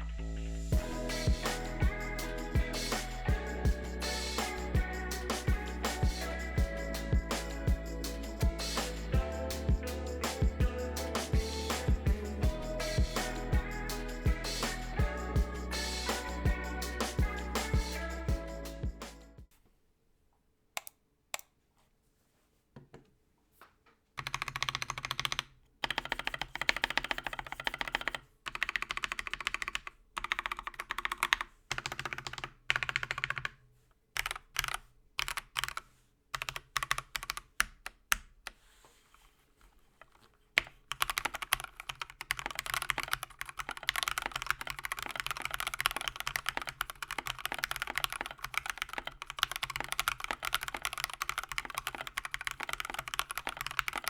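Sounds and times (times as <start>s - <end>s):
mechanical keyboard typing: 24.2s - 33.6s, 34.2s - 35.8s, 36.4s - 38.3s, 40.6s - 54.0s.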